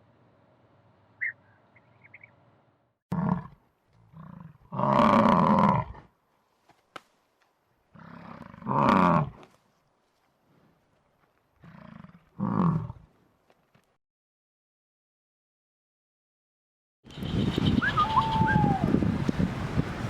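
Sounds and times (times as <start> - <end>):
faint high chirps: 1.2 - 2.4
large animal calling loudly: 17.8 - 18.9.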